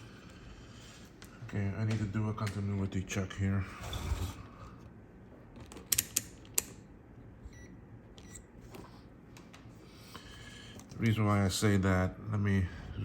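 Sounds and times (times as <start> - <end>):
air conditioner hum: 0.0 - 13.0
faint multimeter beeps: 7.5 - 8.5.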